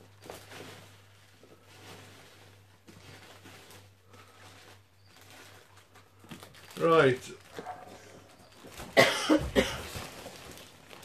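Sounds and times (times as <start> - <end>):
packaging rustling: 0.0 - 11.0.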